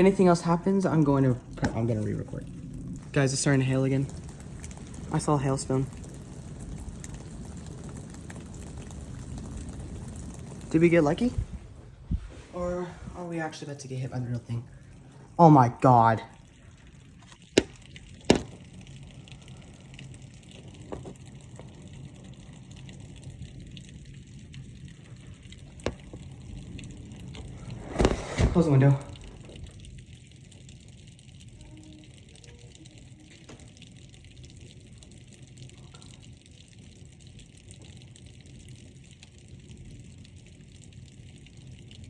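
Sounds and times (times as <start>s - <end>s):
hailstones striking hard surface: 0.0s - 11.8s, 17.2s - 23.4s
low steady hum: 0.0s - 42.0s
steady rain: 0.0s - 42.0s.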